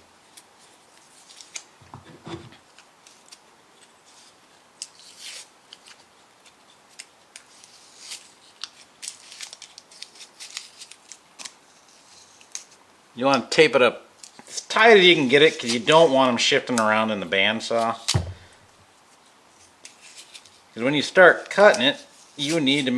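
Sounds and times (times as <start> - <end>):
adhesive tape ripping: 0.4 - 1.7, 6.9 - 12.8.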